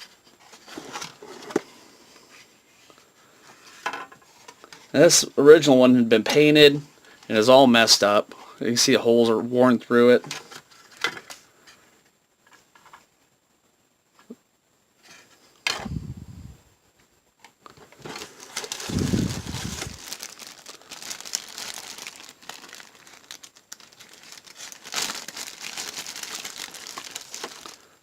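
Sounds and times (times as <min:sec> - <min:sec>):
packaging rustling: 0:17.9 - 0:28.0.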